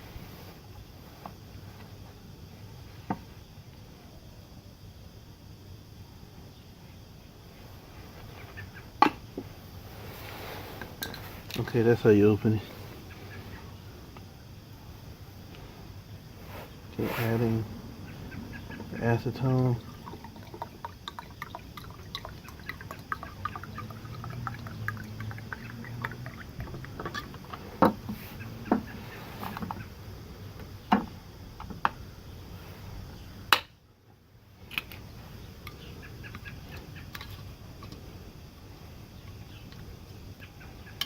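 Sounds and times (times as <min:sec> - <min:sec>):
liquid pouring: 0:19.2 - 0:27.6.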